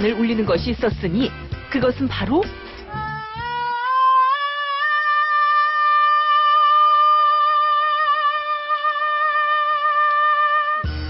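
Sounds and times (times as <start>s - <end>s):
boy singing long high note: 3.6s - 10.9s.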